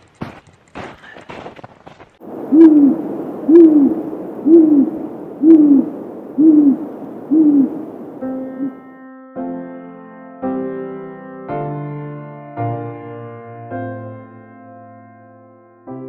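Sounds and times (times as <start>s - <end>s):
steady hiss: 2.2s - 8.7s
owl hooting: 2.2s - 8.8s.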